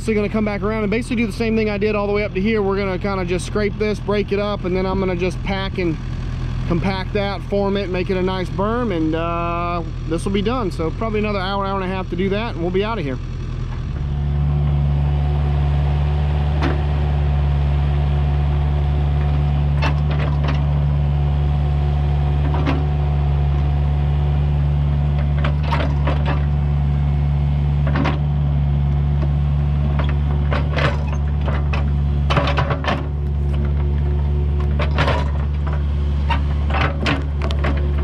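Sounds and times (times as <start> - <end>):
excavator diesel engine running: 0.0 - 38.0
knocks and clanks of digging: 16.5 - 16.9, 19.1 - 21.0, 22.4 - 23.7, 25.0 - 26.7, 27.8 - 28.4, 29.0 - 38.0.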